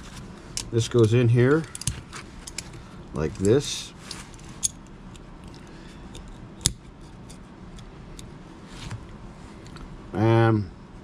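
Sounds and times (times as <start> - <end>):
knife parts clicking: 0.6 - 2.7.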